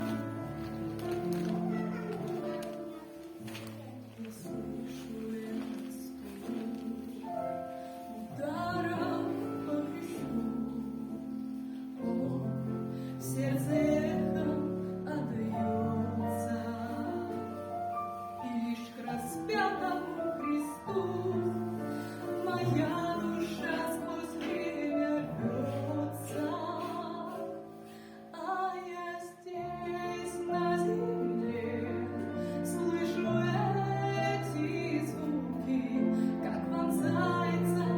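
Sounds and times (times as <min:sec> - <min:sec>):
person singing: 0:18.4 - 0:27.8, 0:28.4 - 0:37.9.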